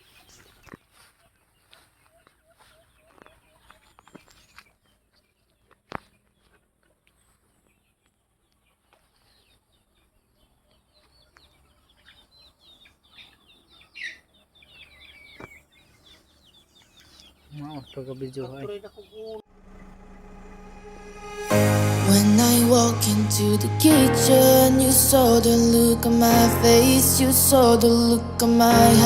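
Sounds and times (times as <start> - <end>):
small birds chirping: 7.2 - 19.4
chickens clucking: 11.3 - 19.4.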